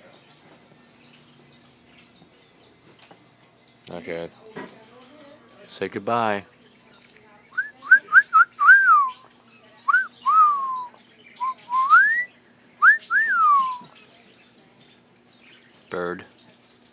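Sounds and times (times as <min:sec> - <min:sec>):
whistled notes: 0:09.9 - 0:13.9.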